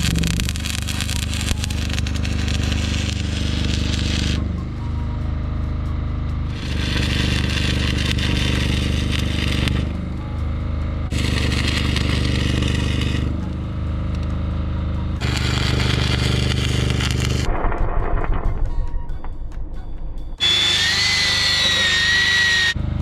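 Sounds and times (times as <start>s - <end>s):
electric arc welding crackling: 0.0s - 4.5s, 6.5s - 10.1s, 11.1s - 13.5s, 15.2s - 17.5s, 20.4s - 22.8s
steady low hum: 0.0s - 18.6s.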